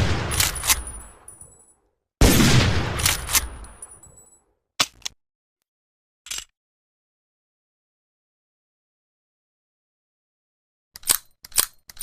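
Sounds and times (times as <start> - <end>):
rifle shot: 0.0 - 1.1, 2.2 - 3.8
rifle lever metallic clicks: 0.3 - 1.4, 3.0 - 4.2, 6.3 - 6.5, 11.0 - 12.0.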